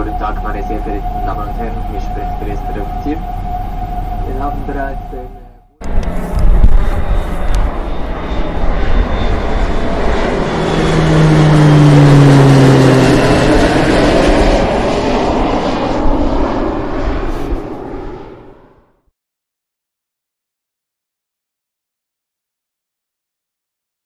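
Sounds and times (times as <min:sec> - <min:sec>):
airplane engines passing: 0:00.0 - 0:19.0.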